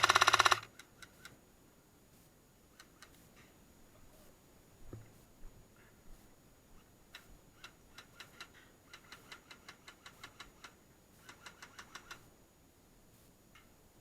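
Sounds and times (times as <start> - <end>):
airsoft gunfire clicks: 0.0 - 0.7.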